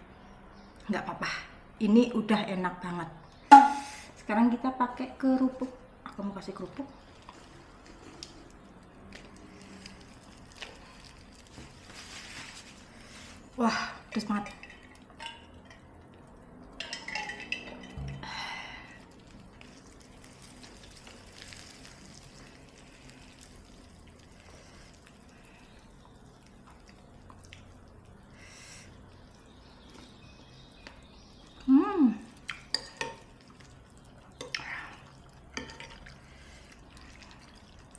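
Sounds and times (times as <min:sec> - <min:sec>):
spoon clinking against bowl: 0:16.8 - 0:18.2.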